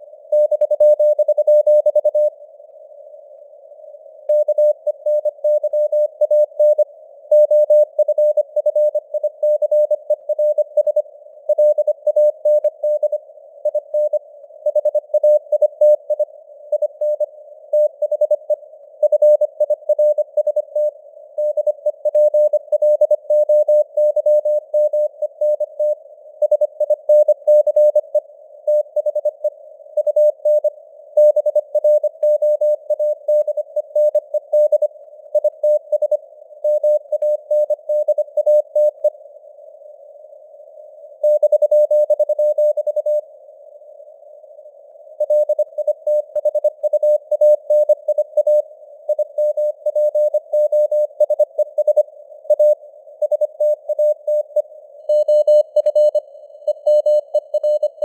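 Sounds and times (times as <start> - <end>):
morse code tone: 50.0 - 58.0.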